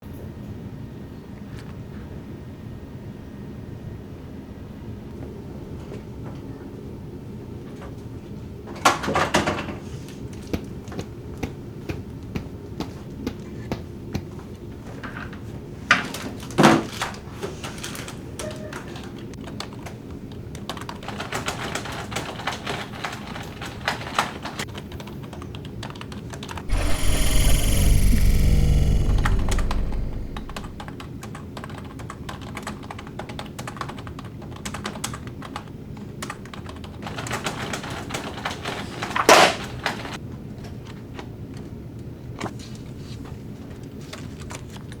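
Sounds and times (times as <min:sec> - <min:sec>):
loud rushing noise: 0:26.7 - 0:30.9
low steady hum: 0:26.7 - 0:30.9.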